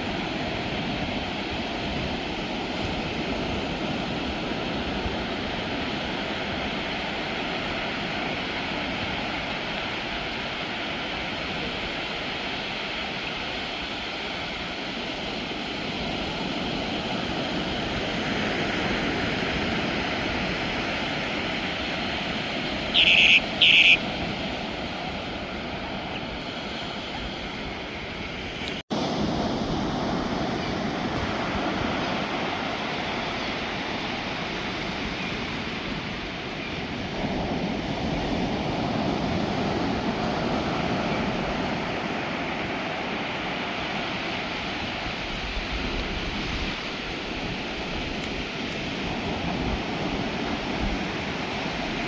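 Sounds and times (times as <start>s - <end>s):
ocean surf washing in: 0.0s - 52.0s
short high-pitched calls: 22.9s - 24.1s.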